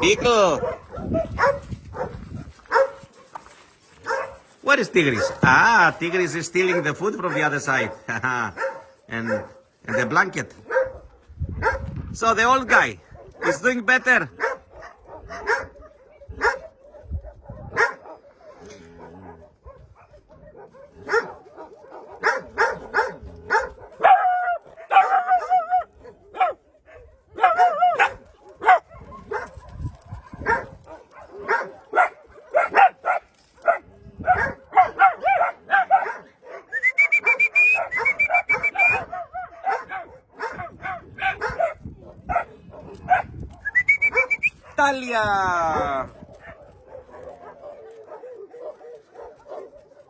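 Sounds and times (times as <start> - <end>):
dogs barking and yipping: 0.0 - 12.0, 12.7 - 50.0
dogs whining: 36.7 - 39.1, 43.6 - 44.7.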